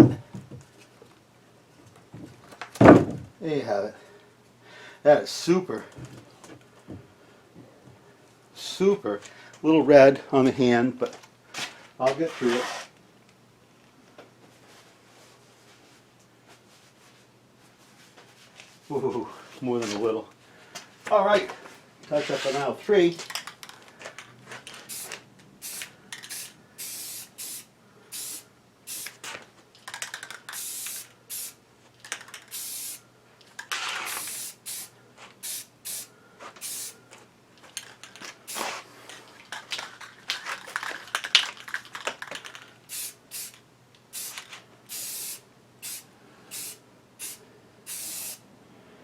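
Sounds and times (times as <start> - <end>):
spray paint can hissing: 24.9 - 29.3, 30.0 - 31.6, 32.2 - 33.0, 33.8 - 37.0, 38.5 - 38.7, 42.9 - 48.4.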